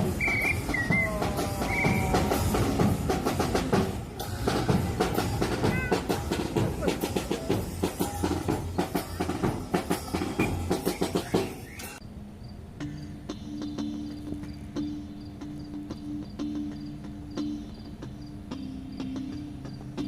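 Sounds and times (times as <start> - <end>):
hip-hop music: 0.0 - 12.0.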